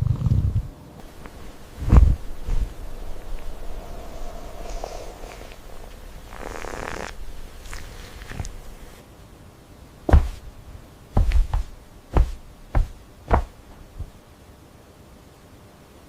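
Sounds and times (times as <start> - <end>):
dull knocks: 10.1 - 10.5, 11.2 - 14.2.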